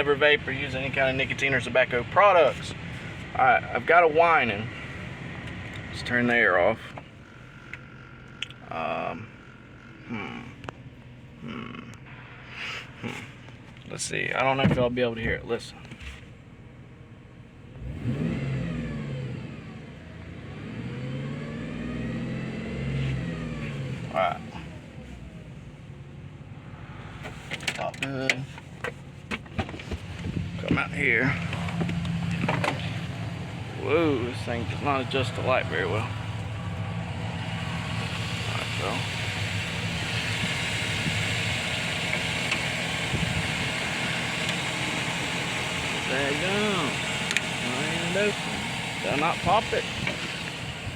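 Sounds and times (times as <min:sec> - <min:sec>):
engine whine: 0:00.0 - 0:50.9
truck engine revving: 0:17.7 - 0:25.4, 0:29.9 - 0:50.9.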